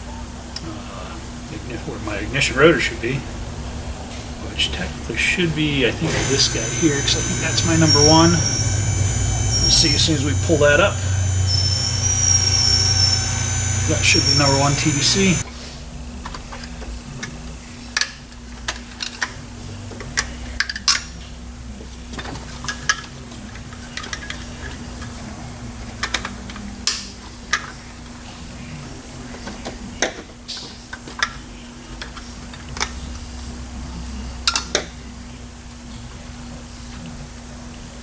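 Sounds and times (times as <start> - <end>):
steady low hum: 0.0 - 17.8.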